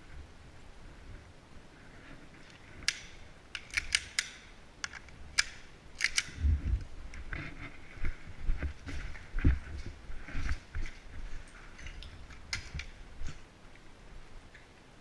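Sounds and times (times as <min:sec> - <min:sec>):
rustling of movement: 0:06.0 - 0:14.5.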